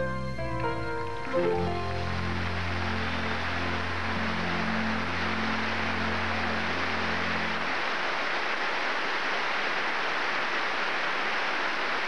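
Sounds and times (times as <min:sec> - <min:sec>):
low held music chord: 0:00.0 - 0:07.8
audience applauding: 0:00.4 - 0:12.0.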